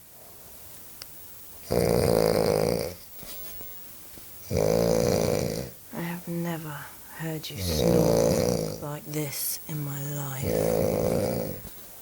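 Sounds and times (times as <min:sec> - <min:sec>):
man snoring loudly: 0:01.7 - 0:03.0, 0:04.4 - 0:05.8, 0:07.6 - 0:08.8, 0:10.3 - 0:11.7
quiet breathing: 0:04.5 - 0:12.0.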